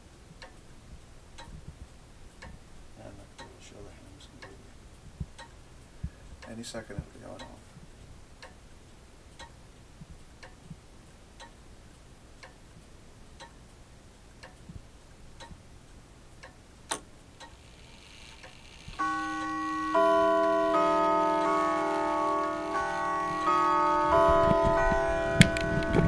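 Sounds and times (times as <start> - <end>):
clock ticking: 0.0 - 26.0
sharp click: 16.9 - 17.6
clock chime ringing: 19.0 - 26.0.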